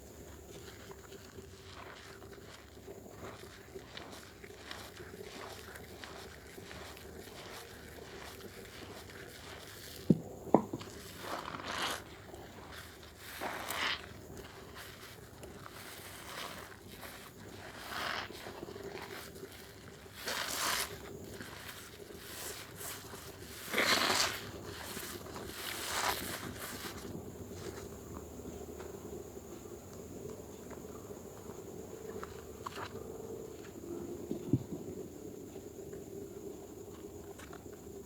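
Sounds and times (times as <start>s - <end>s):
soap lathering with water: 0.6s - 10.1s, 10.8s - 27.8s
sharp knocks: 10.1s - 10.8s.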